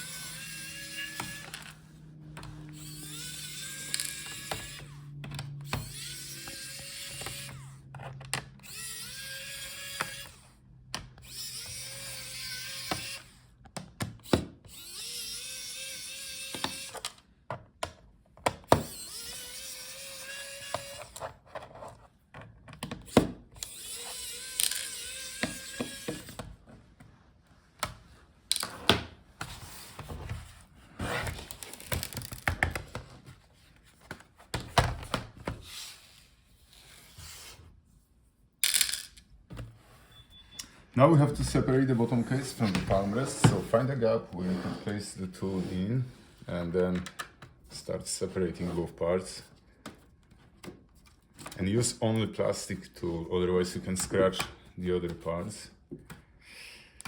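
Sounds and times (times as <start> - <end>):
electric screwdriver whining: 0.0 - 17.3, 18.6 - 21.3, 22.8 - 26.6, 31.0 - 32.8
screws clattering: 23.6 - 26.3, 38.6 - 39.2.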